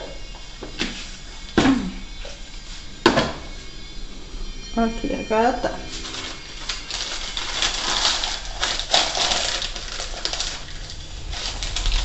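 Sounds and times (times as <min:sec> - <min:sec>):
flour rustling and scraping: 0:05.9 - 0:12.0.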